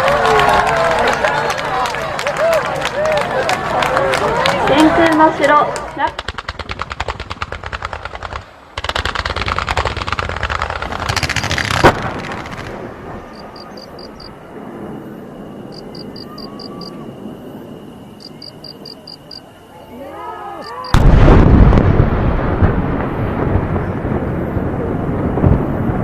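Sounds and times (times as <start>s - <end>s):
firecrackers crackling: 0.0s - 17.2s
loud firecracker bang: 6.1s - 13.6s, 20.9s - 26.0s.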